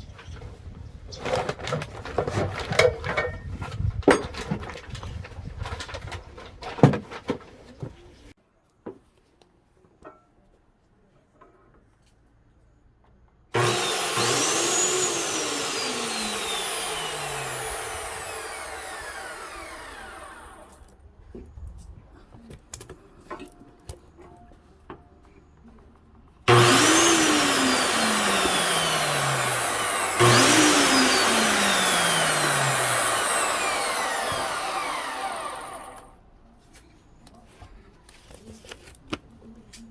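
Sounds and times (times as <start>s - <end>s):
cut-off saw motor whine: 13.6s - 20.8s, 26.5s - 36.1s.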